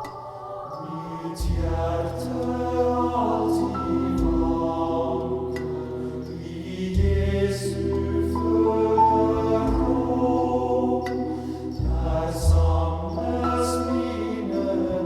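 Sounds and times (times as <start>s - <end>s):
slow music through speakers: 0.0s - 15.0s
deep bass notes: 1.4s - 15.0s.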